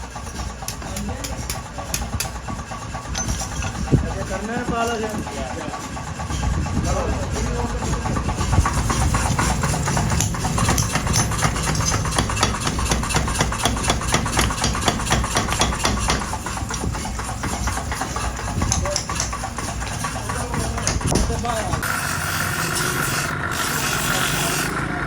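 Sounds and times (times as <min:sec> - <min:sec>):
power hammer blows on metal: 0:00.0 - 0:25.0
steady motor hum: 0:00.0 - 0:25.0.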